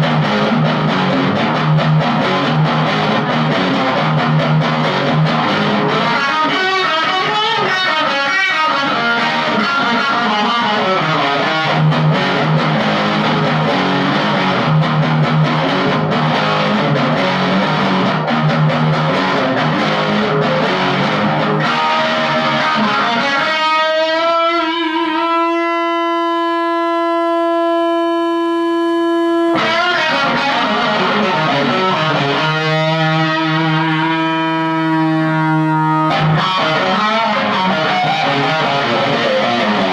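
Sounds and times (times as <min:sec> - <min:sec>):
distorted electric guitar riffing: 0:00.0 - 0:39.9.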